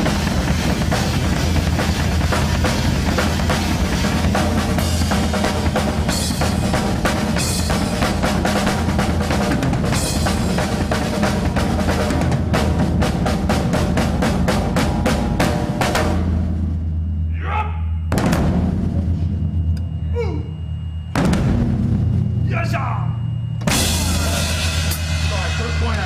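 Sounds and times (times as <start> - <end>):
drum kit playing fast rhythm: 0.0 - 17.2, 23.6 - 26.0
taiko drum: 18.0 - 19.7, 21.1 - 22.5, 23.2 - 26.0.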